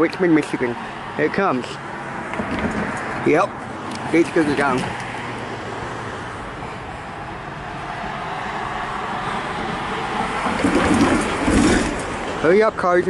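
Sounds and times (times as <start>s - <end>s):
cars going by: 0.0s - 13.0s.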